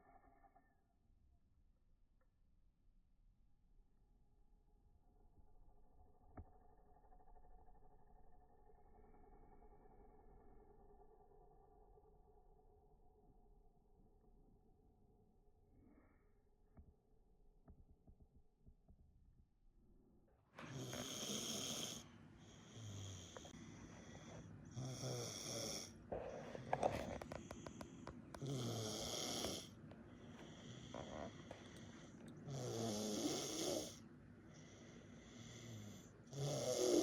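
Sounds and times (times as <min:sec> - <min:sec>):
baby snoring: 0:20.6 - 0:22.0, 0:22.8 - 0:27.8, 0:28.4 - 0:29.7, 0:30.4 - 0:31.8, 0:32.5 - 0:34.0, 0:35.5 - 0:37.0.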